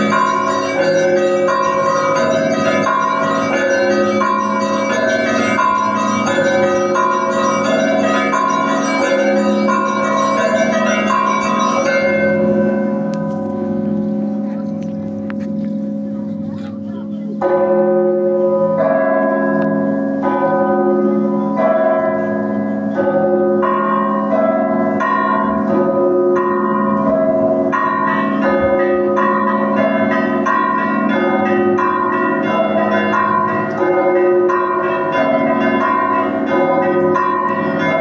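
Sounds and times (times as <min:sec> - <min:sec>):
small bells struck: 0:00.0 - 0:13.8
deep bell hum: 0:00.0 - 0:14.4.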